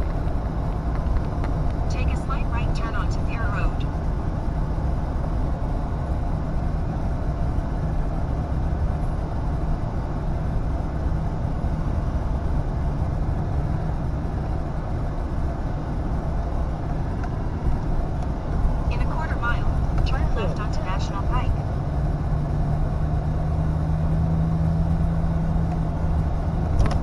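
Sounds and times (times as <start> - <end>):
engine and tyre road noise: 0.0 - 27.0.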